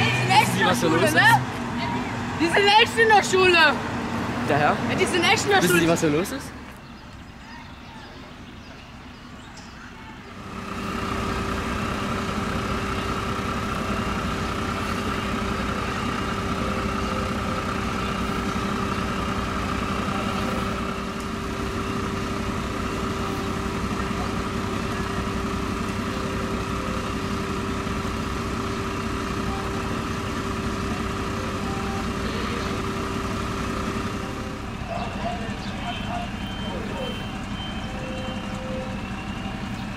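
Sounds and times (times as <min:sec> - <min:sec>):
fire engine idling: 0:10.1 - 0:39.9.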